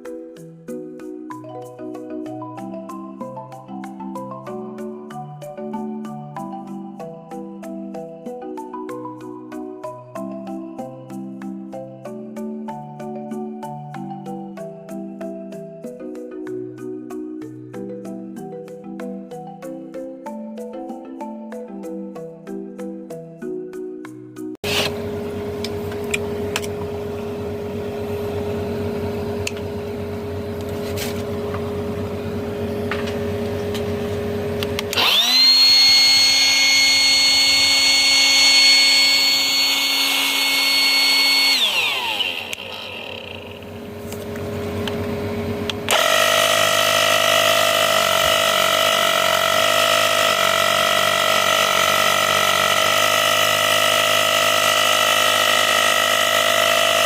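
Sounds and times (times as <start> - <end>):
small electric motor whining: 24.6 - 57.0.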